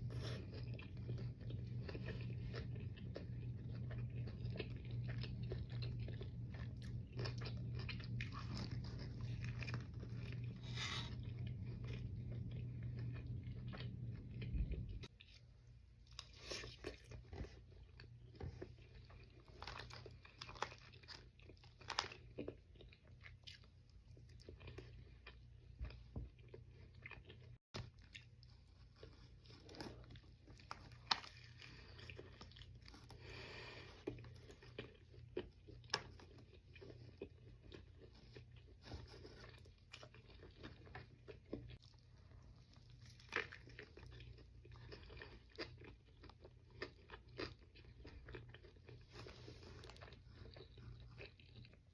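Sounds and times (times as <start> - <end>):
low hum: 0.0 - 15.2
person chewing crunchy food: 0.0 - 51.9.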